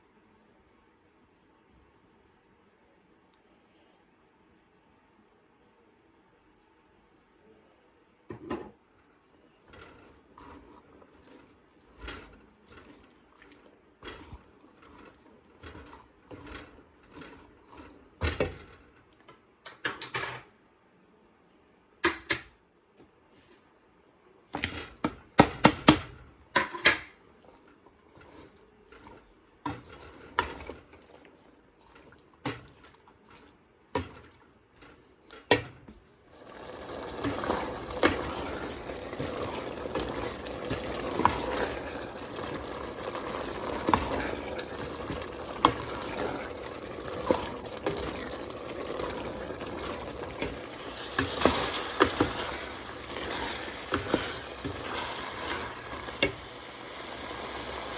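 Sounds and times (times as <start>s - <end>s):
water running: 9.6s - 19.1s, 27.2s - 57.9s.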